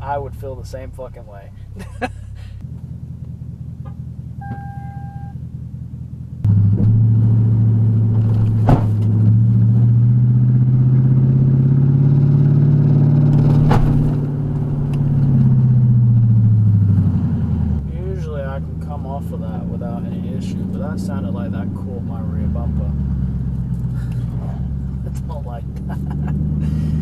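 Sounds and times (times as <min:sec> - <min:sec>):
car engine accelerating: 0:01.6 - 0:27.0
short electronic beep: 0:04.4 - 0:05.4.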